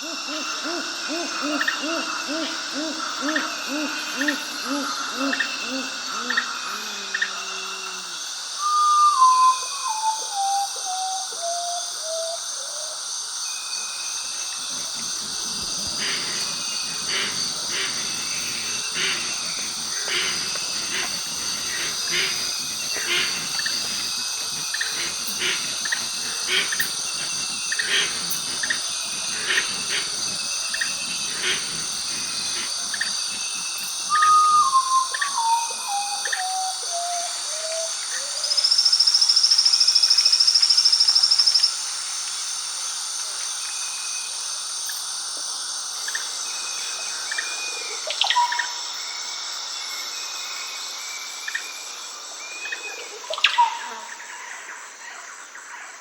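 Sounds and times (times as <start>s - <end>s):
high-pitched insect chorus: 0.0s - 56.0s
bird calls: 14.6s - 37.7s.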